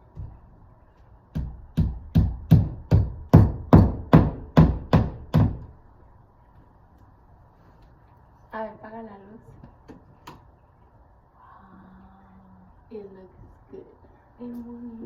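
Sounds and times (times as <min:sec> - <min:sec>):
hammer hitting a nail: 0:01.3 - 0:05.7.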